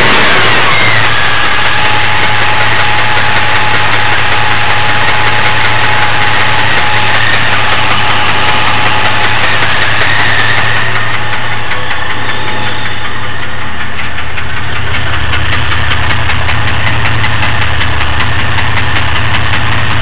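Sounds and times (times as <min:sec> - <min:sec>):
high whine: 0:00.0 - 0:16.5
engine idling: 0:00.0 - 0:20.0
engine ticking noise: 0:00.0 - 0:20.0.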